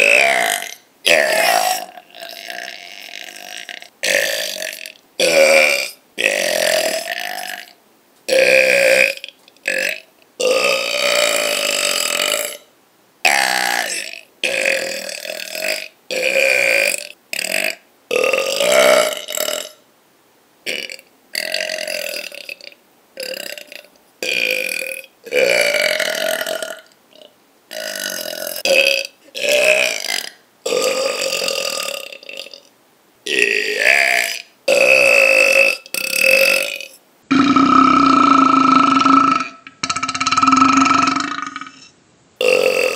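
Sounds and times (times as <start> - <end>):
person burping: 0.0 - 12.7, 13.3 - 19.8, 20.7 - 32.7, 33.3 - 42.9.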